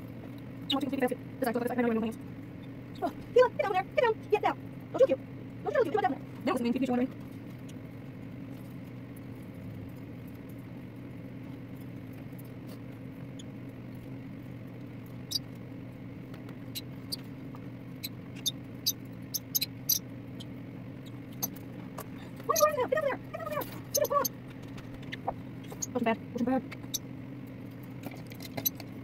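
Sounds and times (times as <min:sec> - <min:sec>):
steady low hum: 0:00.0 - 0:29.0
parrots chirping and squeaking: 0:00.6 - 0:03.8, 0:15.0 - 0:15.6, 0:16.6 - 0:27.1, 0:28.0 - 0:29.0.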